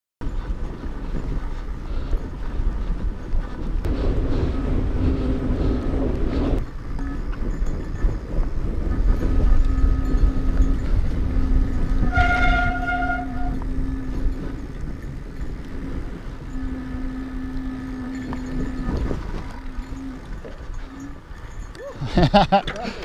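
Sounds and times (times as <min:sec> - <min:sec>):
bike tires on trail: 0:00.2 - 0:23.0
wind rumble: 0:00.2 - 0:23.0
steady low hum: 0:00.3 - 0:22.4
short high-pitched squeal: 0:08.9 - 0:14.6.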